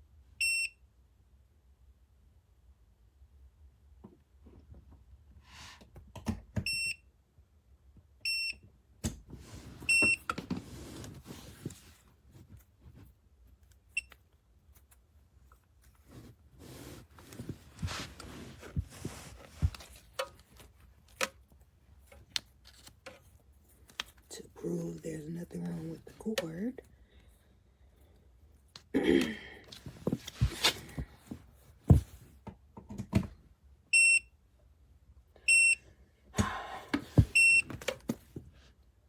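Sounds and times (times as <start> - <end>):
knocks and rustling of cord: 14.7 - 24.3, 29.8 - 33.4, 36.4 - 38.6.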